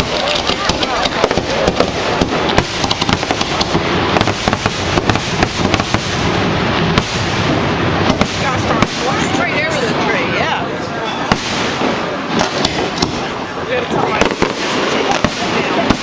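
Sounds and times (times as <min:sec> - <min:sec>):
fireworks bangs and crackling: 0:00.0 - 0:16.0.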